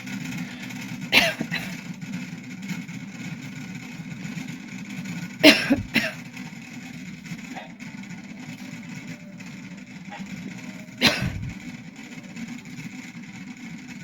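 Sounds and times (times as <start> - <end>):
steady low hum: 0.0 - 14.0
person coughing: 1.2 - 1.8, 5.5 - 6.2, 11.0 - 11.6.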